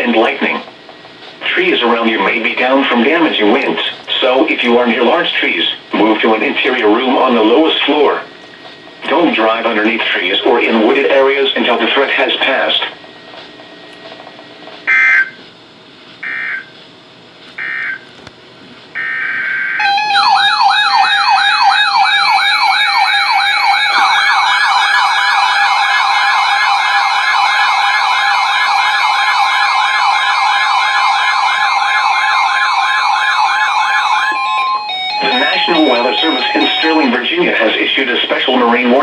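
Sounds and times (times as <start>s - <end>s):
warbling alert siren: 14.9s - 15.4s, 16.2s - 16.7s, 17.6s - 18.0s, 19.0s - 37.8s
digital data tone squawks: 19.0s - 37.6s
two-tone attention signal: 19.8s - 37.4s.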